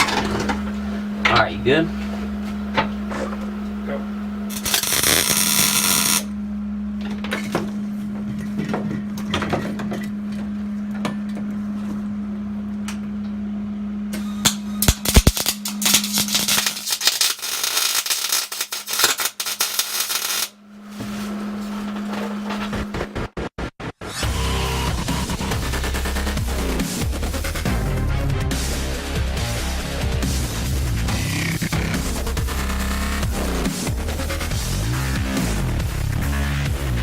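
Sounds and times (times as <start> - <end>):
steady hum: 0.0 - 9.0, 10.0 - 23.3
welding crackling hiss: 4.5 - 6.3, 14.8 - 20.5.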